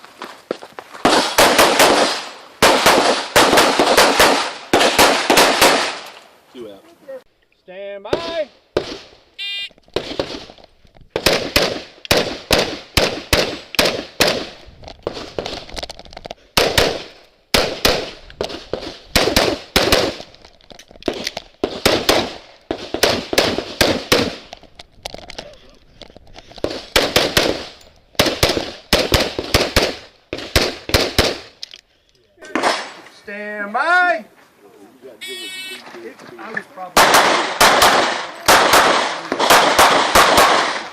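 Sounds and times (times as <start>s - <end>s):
rapid pistol gunfire: 1.1s - 6.1s, 11.2s - 15.2s, 16.6s - 20.3s, 21.1s - 24.5s, 26.6s - 31.5s, 37.0s - 40.9s.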